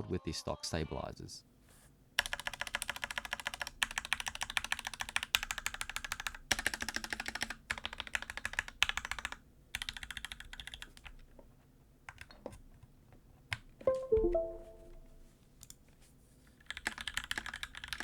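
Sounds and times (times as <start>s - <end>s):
mechanical keyboard clacks: 2.2s - 11.2s, 16.7s - 18.0s.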